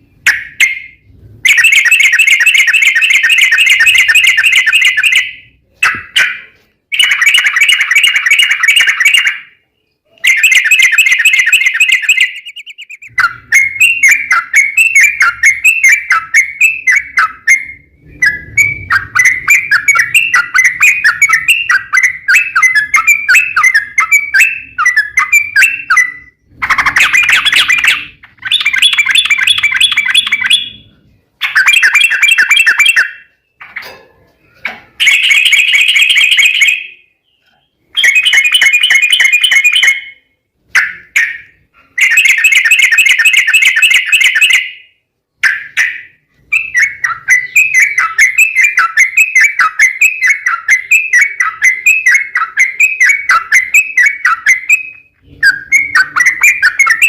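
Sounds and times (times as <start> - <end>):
bird singing chattering trills: 0.2 - 33.8, 34.9 - 44.6, 45.4 - 57.0.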